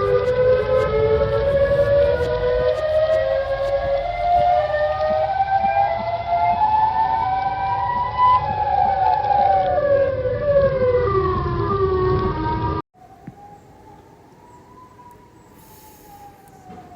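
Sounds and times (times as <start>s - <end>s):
warning siren wailing: 0.0s - 16.9s.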